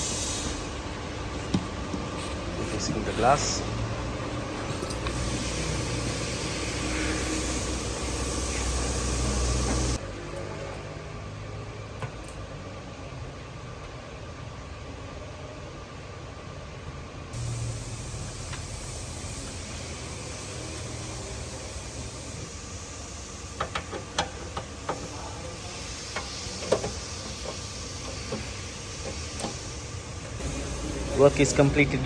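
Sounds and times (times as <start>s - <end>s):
steady hiss: 0.0s - 1.6s, 17.4s - 32.0s.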